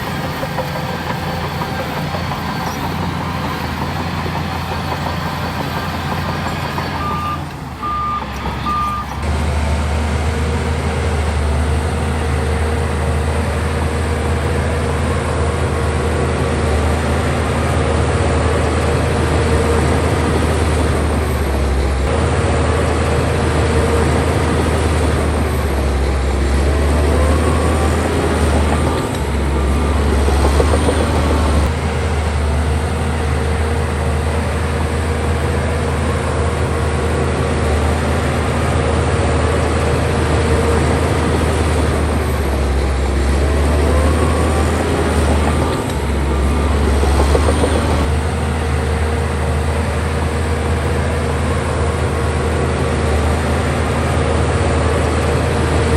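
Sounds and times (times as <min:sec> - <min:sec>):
diesel machinery engine hum: 0:00.0 - 0:55.9
reversing beeps: 0:00.4 - 0:09.3.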